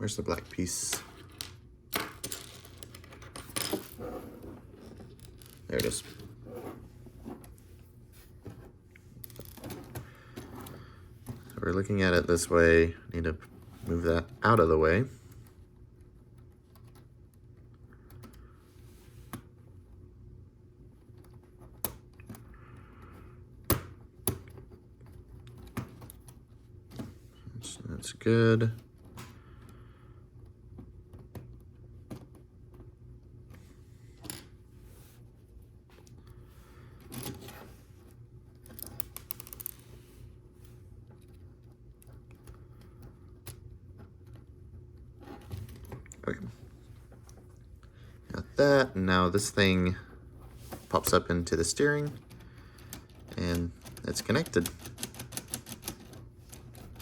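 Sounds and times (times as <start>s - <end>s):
faint steady hum: 0.0s - 57.0s
plastic pieces clicking: 38.6s - 39.8s.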